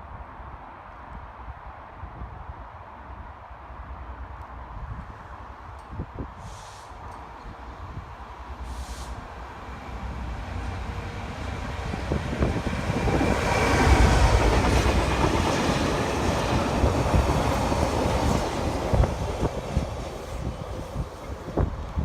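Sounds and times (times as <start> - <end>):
train passing: 5.1 - 22.0.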